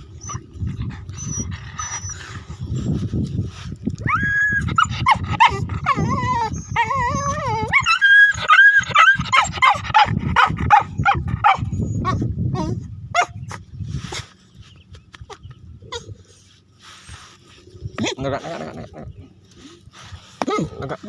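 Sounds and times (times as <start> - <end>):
dog whining and yelping: 0.1 - 2.9, 4.0 - 13.6, 15.8 - 16.4.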